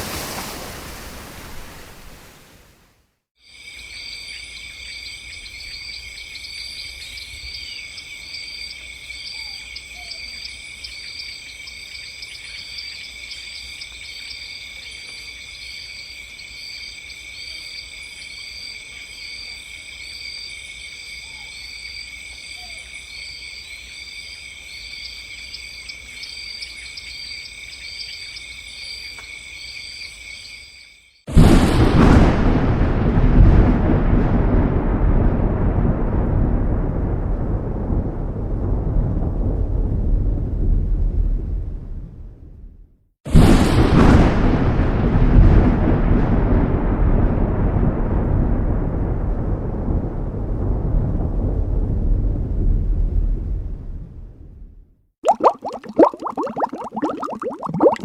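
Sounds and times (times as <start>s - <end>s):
crickets trilling: 3.4s - 31.1s, 55.3s - 58.0s.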